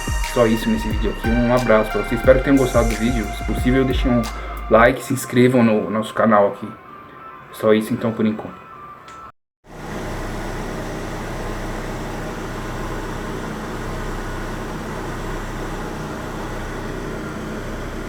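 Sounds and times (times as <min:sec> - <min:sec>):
car engine running: 0:09.8 - 0:18.0.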